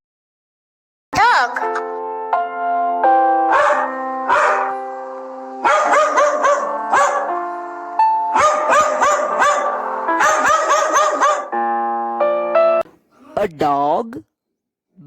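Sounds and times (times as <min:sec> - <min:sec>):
keyboard music: 0:01.2 - 0:13.0
dog barking: 0:03.5 - 0:04.8, 0:05.6 - 0:07.5, 0:08.3 - 0:11.6.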